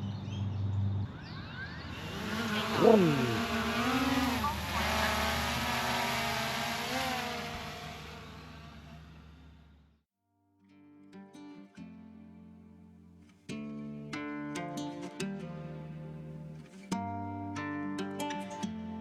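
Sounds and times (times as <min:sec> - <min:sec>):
drone propellers whining: 0:01.8 - 0:09.6.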